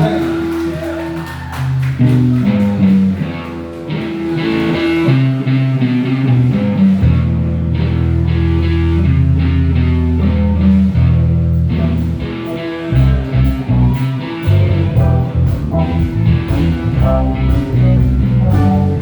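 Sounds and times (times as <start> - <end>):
bass guitar: 1.4 - 19.0
guitar lines: 1.6 - 19.0
steady drum beat: 12.0 - 19.0.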